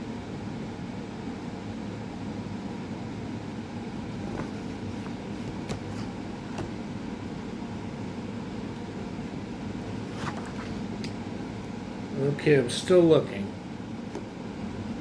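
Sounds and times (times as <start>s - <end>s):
low fan hum: 0.0s - 15.0s
paper rustling: 4.2s - 6.8s, 10.0s - 11.0s.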